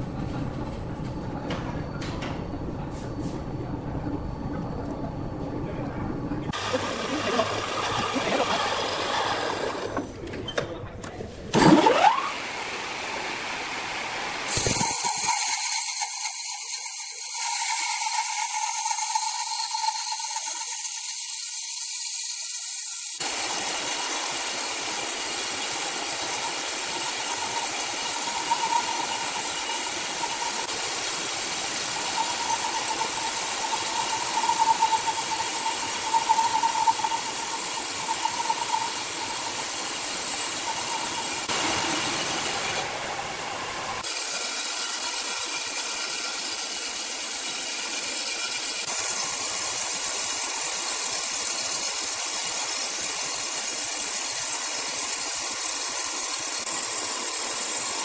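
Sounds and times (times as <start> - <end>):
sawmill machinery running: 6.4 - 10.3, 11.5 - 58.0.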